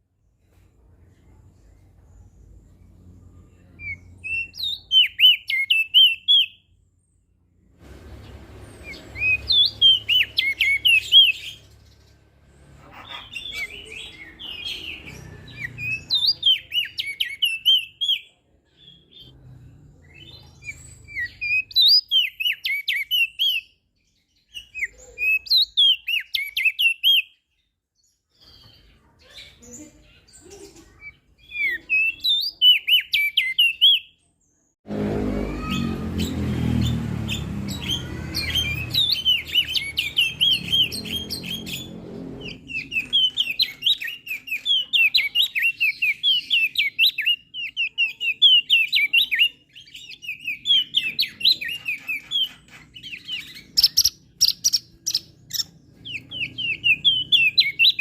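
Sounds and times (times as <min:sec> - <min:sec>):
bird twittering: 0:03.5 - 0:06.7, 0:08.8 - 0:12.2, 0:12.8 - 0:18.2, 0:35.6 - 0:58.0.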